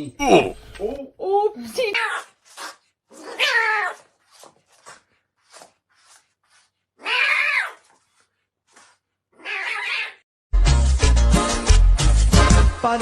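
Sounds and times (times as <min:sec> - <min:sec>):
cat meowing: 0:03.2 - 0:04.0, 0:07.0 - 0:07.9, 0:09.4 - 0:10.2.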